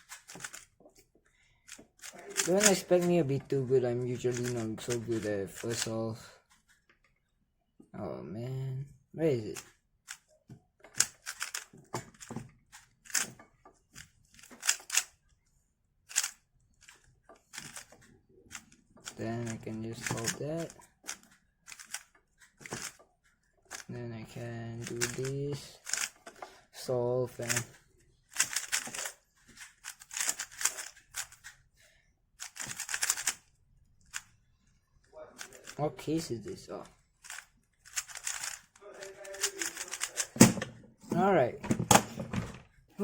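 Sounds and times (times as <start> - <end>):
plastic cube clicking turns: 0.0 - 0.7, 1.7 - 3.2, 4.1 - 5.9, 10.9 - 13.4, 14.0 - 15.2, 16.1 - 23.0, 24.8 - 26.4, 27.3 - 31.6, 32.4 - 34.4, 37.2 - 40.6.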